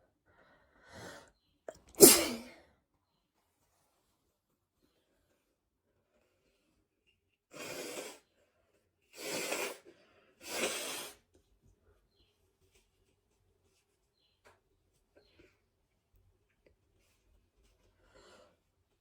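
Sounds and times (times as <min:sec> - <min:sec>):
man sneezing: 0:02.0 - 0:02.6.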